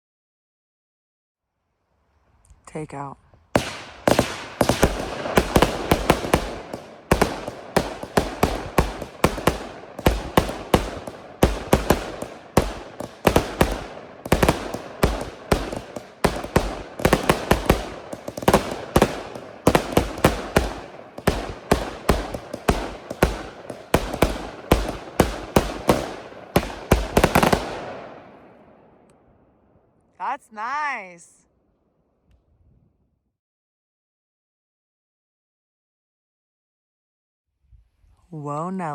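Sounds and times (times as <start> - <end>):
fireworks bangs: 3.6 - 29.1.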